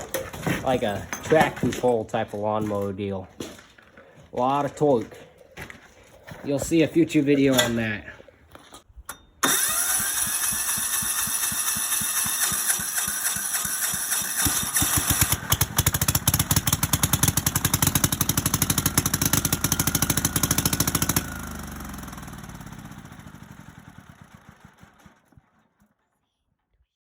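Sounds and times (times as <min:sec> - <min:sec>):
small diesel engine running: 0:09.4 - 0:25.5.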